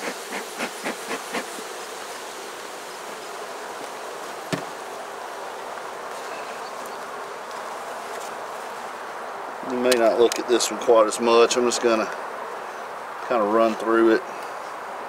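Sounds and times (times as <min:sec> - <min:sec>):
bees buzzing: 0:00.0 - 0:09.9.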